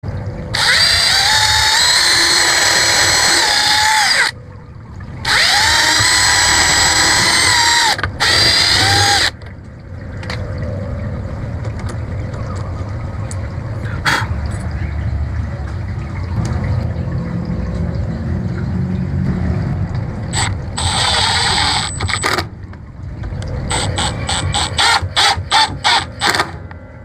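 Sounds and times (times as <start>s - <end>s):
power drill whining: 0.6s - 4.3s, 5.3s - 9.3s, 20.4s - 22.2s, 23.7s - 26.4s.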